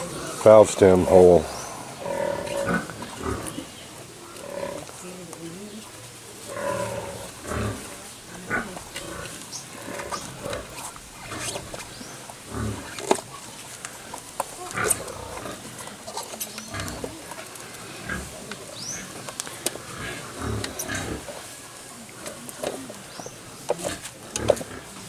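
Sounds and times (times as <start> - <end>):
low animal grunts: 0.0 - 4.9, 6.5 - 13.2, 16.7 - 21.6.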